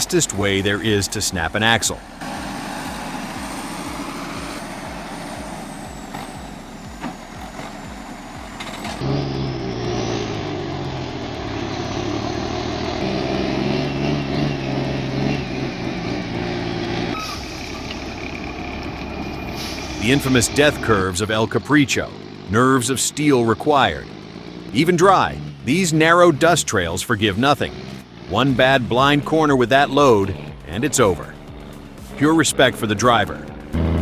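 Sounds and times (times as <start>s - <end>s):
faint high whine: 0.0s - 9.0s
heavy truck engines running: 0.0s - 34.0s.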